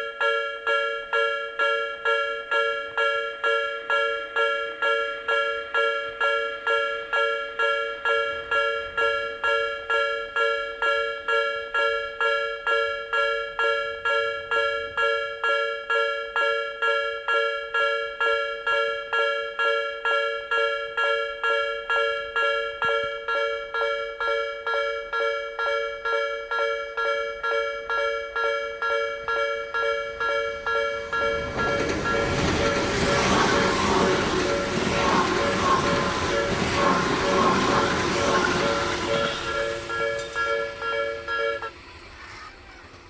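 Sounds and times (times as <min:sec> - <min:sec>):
level crossing bell ringing: 0:00.0 - 0:41.7.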